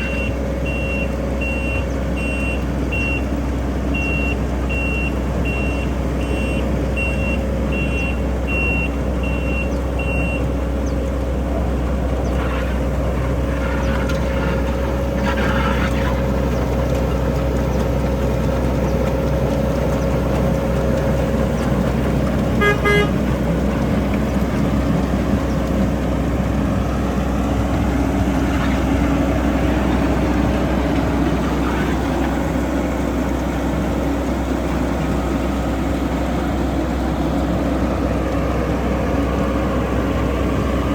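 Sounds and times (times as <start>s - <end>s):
diesel engine running: 0.0s - 40.9s
short horn toot: 22.6s - 23.2s.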